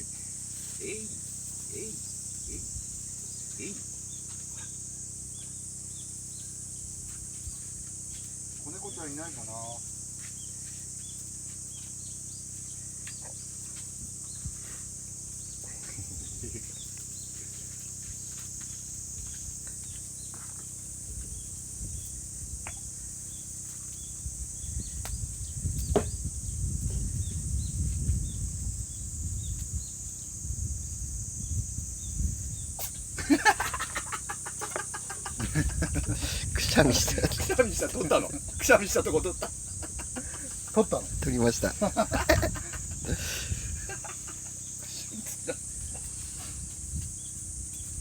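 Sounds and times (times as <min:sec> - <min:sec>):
insects droning: 0:00.0 - 0:48.0
cat sneezing: 0:32.8 - 0:33.0.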